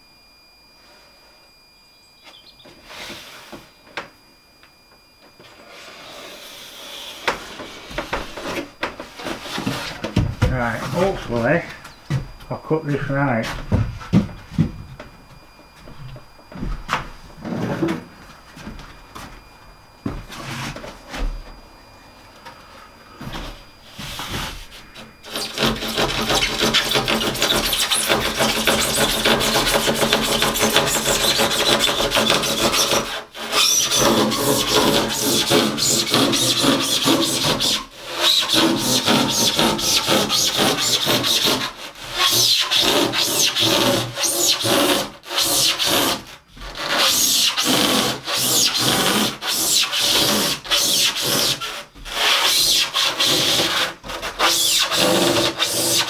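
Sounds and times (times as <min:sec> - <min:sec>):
saw cutting wood: 0:05.6 - 0:11.8, 0:23.2 - 0:56.0.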